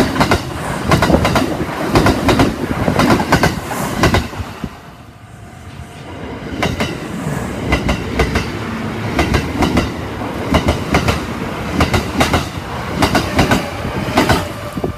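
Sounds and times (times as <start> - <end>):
train running rumble: 0.0 - 14.9.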